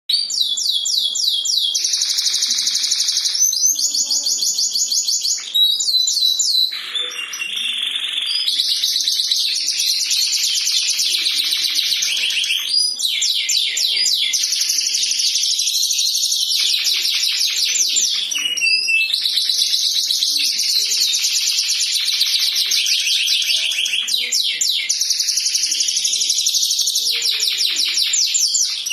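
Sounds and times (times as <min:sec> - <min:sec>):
canary singing: 0:00.1 - 0:28.9.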